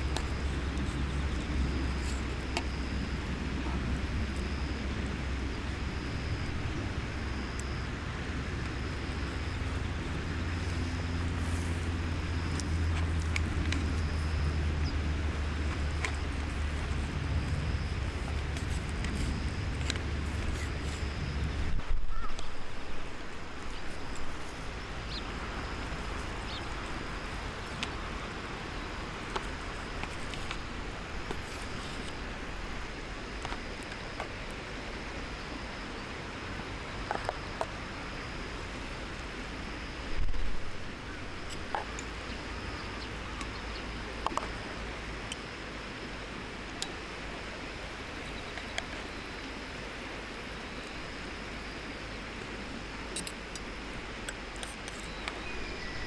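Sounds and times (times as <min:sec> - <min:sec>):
campfire crackling: 0:00.0 - 0:21.8
steady outdoor hiss: 0:00.0 - 0:56.0.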